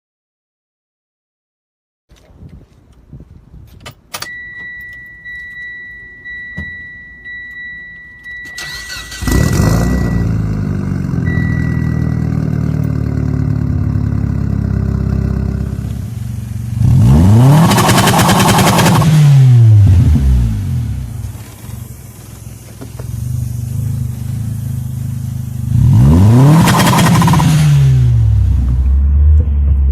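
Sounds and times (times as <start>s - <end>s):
car engine starting and idling: 4.1s - 29.9s
electronic chime: 4.2s - 13.1s
engine revving: 8.6s - 21.6s, 23.2s - 29.9s.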